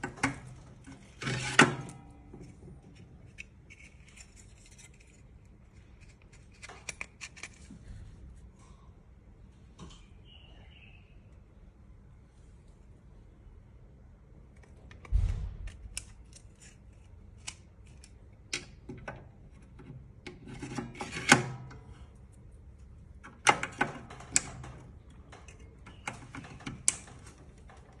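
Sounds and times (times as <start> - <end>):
clicks and knocks of parts: 0.0 - 7.8, 14.5 - 28.0.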